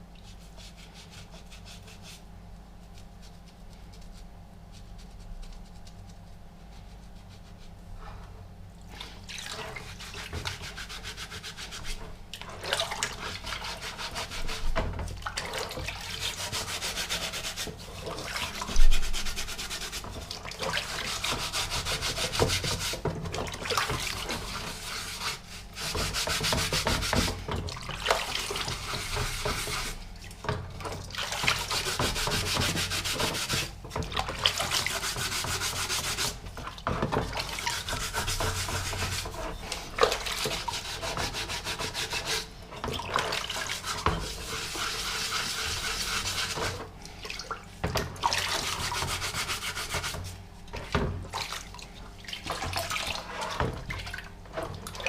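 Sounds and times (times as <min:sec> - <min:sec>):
scrubbing on steel helmet: 0:00.2 - 0:08.0.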